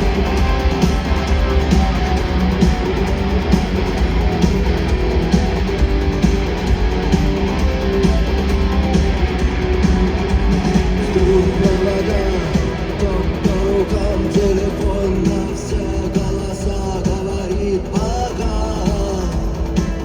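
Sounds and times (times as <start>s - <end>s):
heavy booming bass: 0.0s - 19.6s
guitars: 0.0s - 20.0s
steady drum beat: 0.0s - 20.0s.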